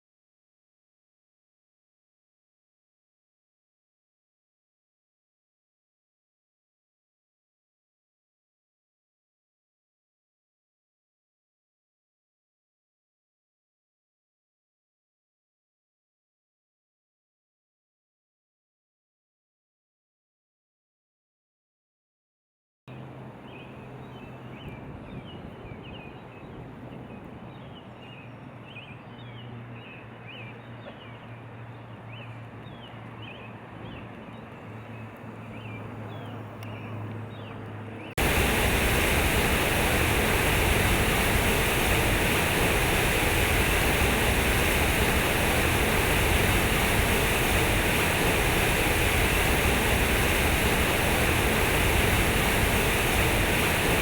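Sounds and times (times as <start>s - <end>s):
birds chirping: 23.4s - 54.0s
low steady hum: 34.1s - 54.0s
waterfall rushing: 38.2s - 54.0s.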